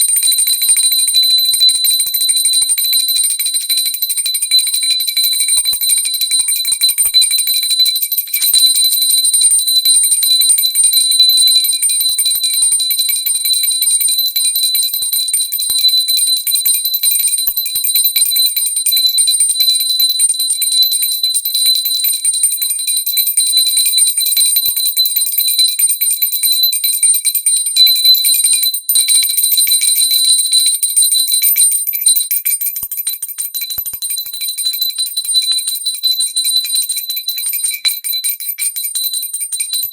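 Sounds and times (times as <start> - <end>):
hand bell ringing rapidly: 0.0 - 39.9.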